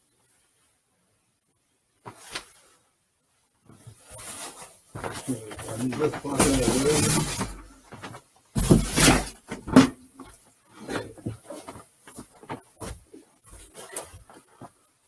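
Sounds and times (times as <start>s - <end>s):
costume rustling and soft knocks: 1.9s - 15.0s.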